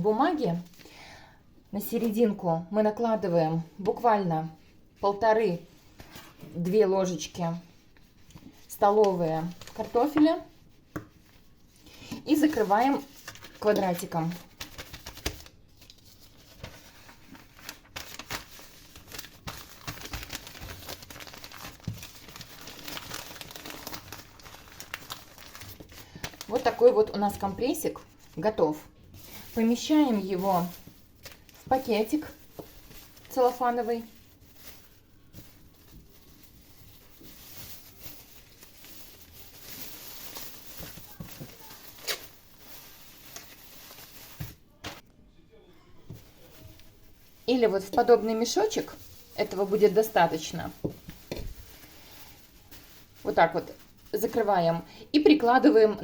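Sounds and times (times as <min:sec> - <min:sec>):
paper crinkling and rustling: 0:05.9 - 0:45.0, 0:46.1 - 0:54.8.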